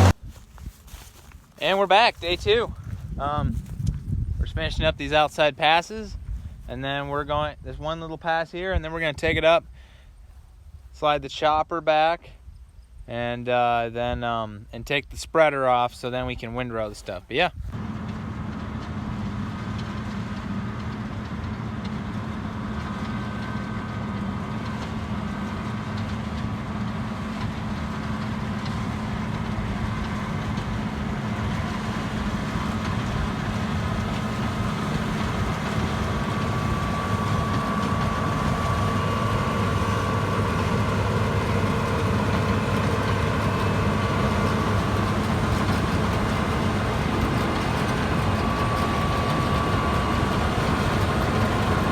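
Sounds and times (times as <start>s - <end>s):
combine harvester droning: 0.0s - 10.8s, 15.7s - 51.9s
high steady whine: 32.1s - 51.9s.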